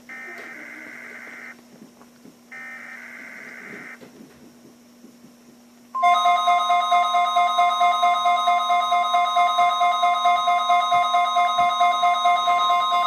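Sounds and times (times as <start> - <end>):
loud steady alarm tone: 0.0 - 1.6, 2.5 - 4.0, 6.0 - 13.0
buzzing digital data tones: 0.1 - 1.6, 2.5 - 4.0.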